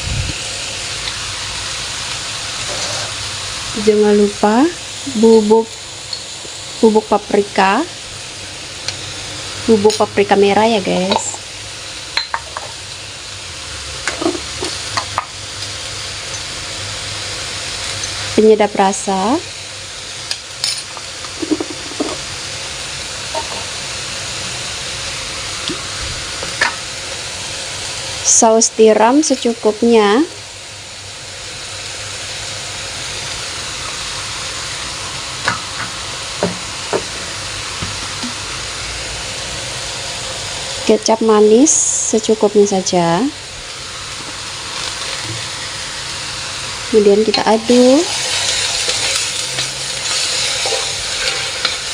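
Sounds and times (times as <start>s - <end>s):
food sizzling in a pan: 0.0s - 51.9s
knocks on a pan: 35.4s - 37.1s.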